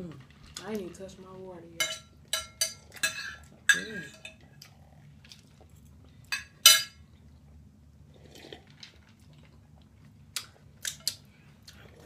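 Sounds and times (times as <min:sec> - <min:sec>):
tableware clinking: 0:01.8 - 0:04.4, 0:06.3 - 0:07.0.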